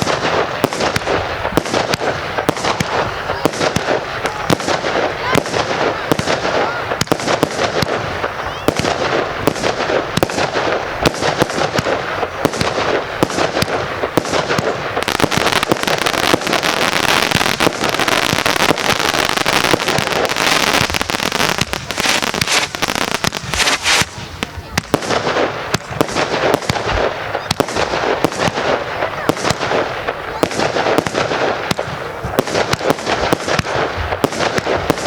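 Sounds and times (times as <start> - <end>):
fireworks bangs and cracks: 0.0 - 35.0
dense hissing crackle: 21.6 - 24.7.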